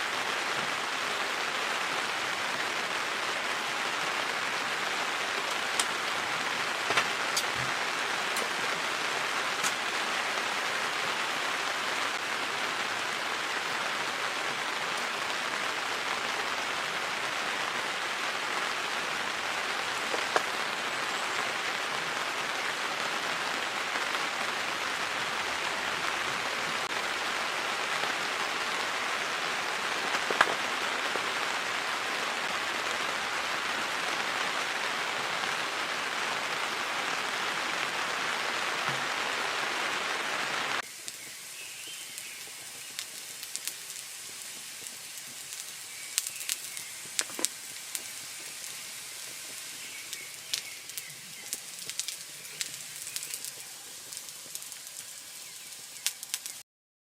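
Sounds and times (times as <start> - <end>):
steady rain falling: 0.0 - 56.6
light ticks and pops: 20.1 - 20.5, 42.2 - 55.1, 56.0 - 56.6.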